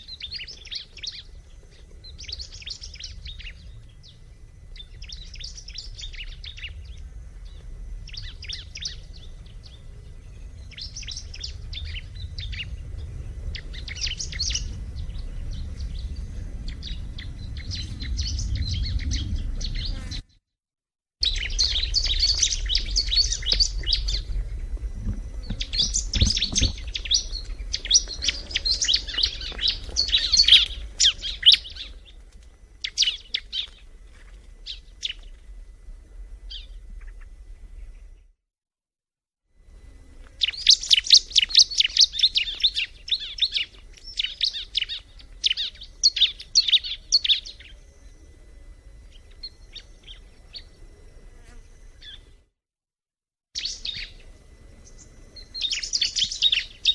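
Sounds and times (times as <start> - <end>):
bird singing high chirping trills: 0.0 - 20.3, 21.2 - 24.7, 25.4 - 32.2, 32.8 - 33.9, 40.4 - 48.1, 49.0 - 50.8, 53.6 - 56.9
low rumble: 1.2 - 20.0, 21.2 - 32.8.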